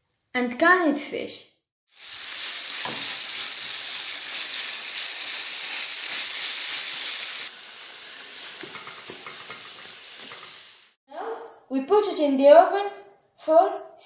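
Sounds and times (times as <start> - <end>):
food sizzling in a frying pan: 1.9 - 11.0.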